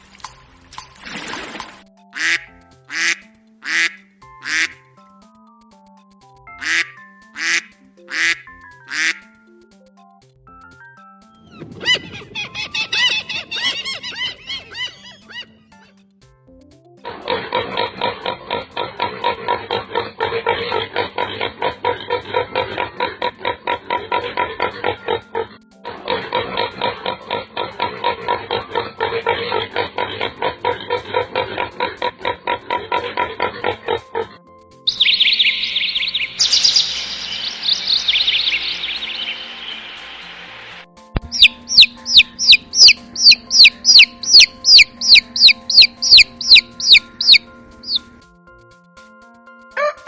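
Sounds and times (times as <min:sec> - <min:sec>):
music: 0:00.0 - 0:50.0
chick peeping loudly: 0:11.8 - 0:15.5, 0:34.9 - 0:39.9, 0:41.2 - 0:48.1
rapid farm animal calls: 0:11.9 - 0:15.5, 0:34.9 - 0:39.4, 0:41.3 - 0:48.1.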